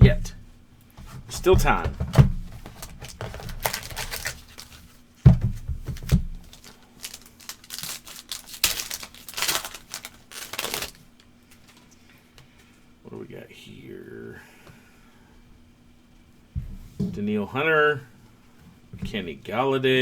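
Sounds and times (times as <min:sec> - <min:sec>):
card pack wrappers crinkling: 0:02.4 - 0:05.0, 0:05.8 - 0:12.0.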